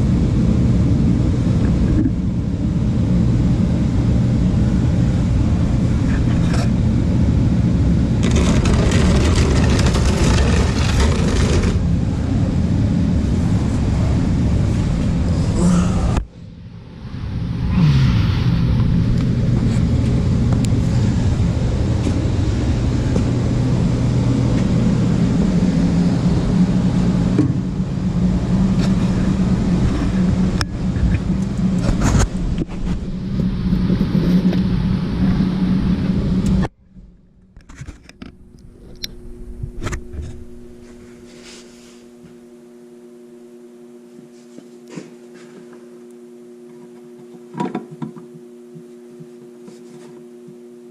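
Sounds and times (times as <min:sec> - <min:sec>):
quiet electrical hum: 0:00.0 - 0:50.9
motor droning: 0:01.0 - 0:50.9.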